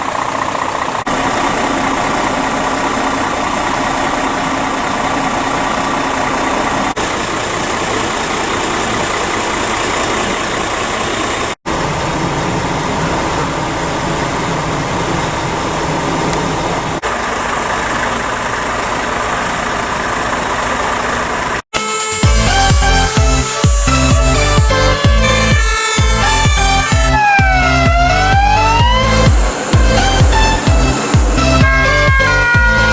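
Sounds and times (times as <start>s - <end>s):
truck diesel engine idling: 0.0s - 32.9s
electronic dance music: 21.8s - 32.9s.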